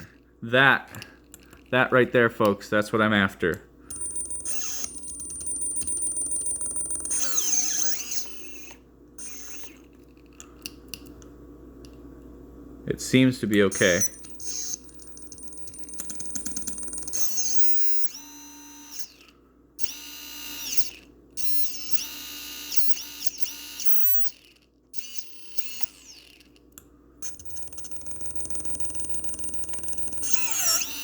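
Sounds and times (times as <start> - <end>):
brushless motors whining: 3.9 - 9.8, 13.8 - 26.5, 27.2 - 31.0.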